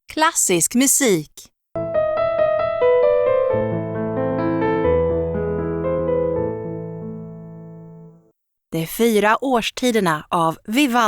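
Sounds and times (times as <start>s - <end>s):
classical piano music: 1.8s - 8.3s.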